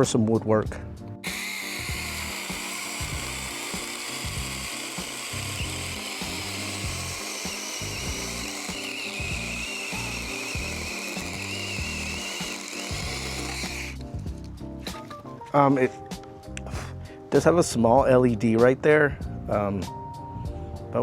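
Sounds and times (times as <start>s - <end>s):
background music: 0.0s - 21.0s
electric chainsaw cutting log: 1.2s - 14.0s.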